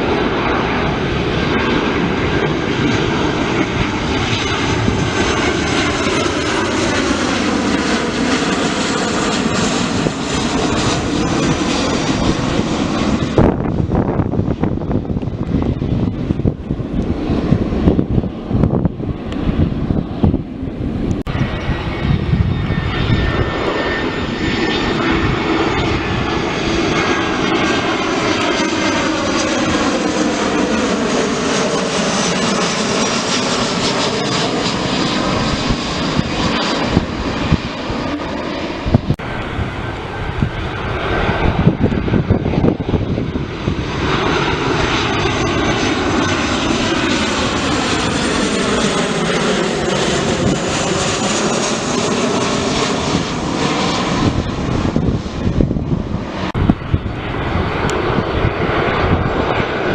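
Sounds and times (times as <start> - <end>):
airliner engine roar overhead: 0.0 - 59.9
wind buffeting microphone: 0.0 - 59.9.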